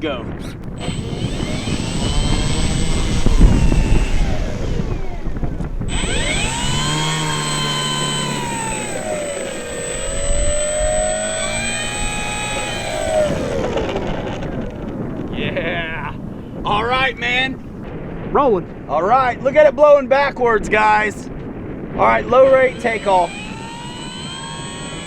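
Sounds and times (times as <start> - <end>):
wind buffeting on microphone: 0.0 - 25.0
electric motor and propeller whining: 0.6 - 15.8, 22.0 - 25.0.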